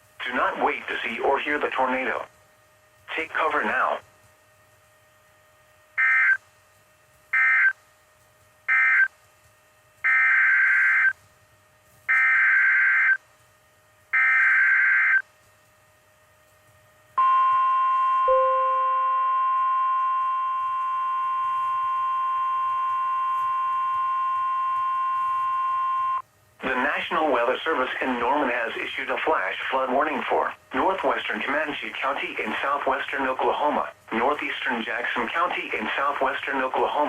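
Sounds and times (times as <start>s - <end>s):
steady warning alarm tone: 6.0s - 6.4s, 7.3s - 7.8s, 8.7s - 9.1s, 10.0s - 11.2s, 12.1s - 13.2s, 14.1s - 15.2s, 17.2s - 26.2s.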